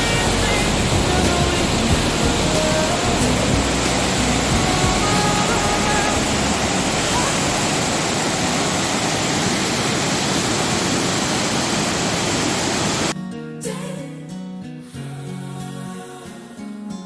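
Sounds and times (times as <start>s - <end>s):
soft plucked guitar music: 0.0s - 7.7s
waterfall rushing: 0.0s - 13.1s.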